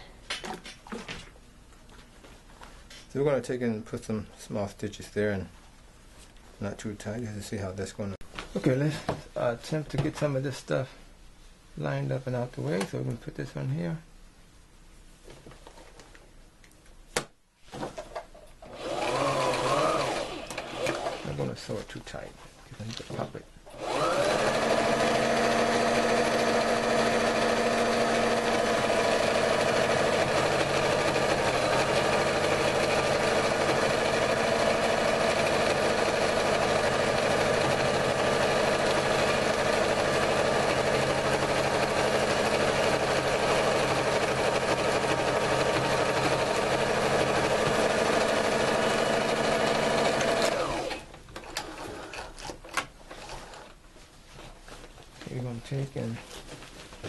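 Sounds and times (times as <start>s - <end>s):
sewing machine running: 18.6s - 21.4s, 23.7s - 52.3s.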